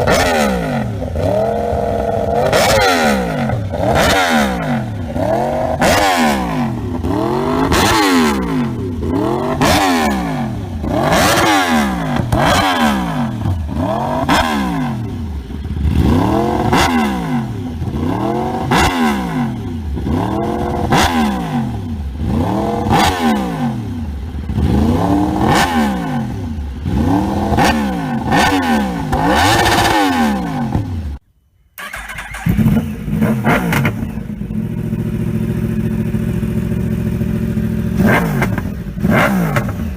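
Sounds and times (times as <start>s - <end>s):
motorcycle engine revving: 0.0s - 31.2s, 31.8s - 39.9s.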